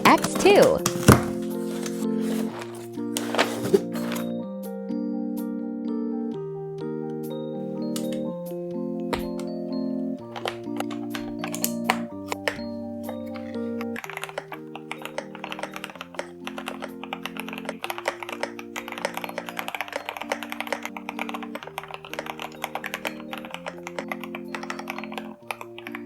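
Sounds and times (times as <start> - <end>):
mechanical keyboard typing: 0.0 - 1.2, 10.3 - 26.0
background music chords: 0.0 - 26.0.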